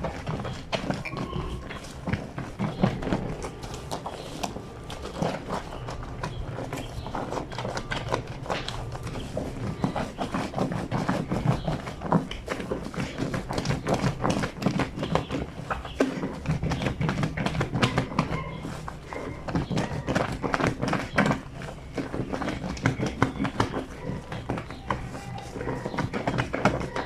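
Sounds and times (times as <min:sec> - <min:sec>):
wet fabric scrubbed on washboard: 0:00.0 - 0:27.0.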